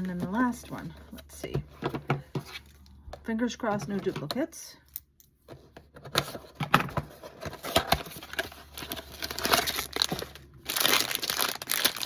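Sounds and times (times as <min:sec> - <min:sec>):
cardboard and plastic wrapper crinkling: 0:07.0 - 0:12.0.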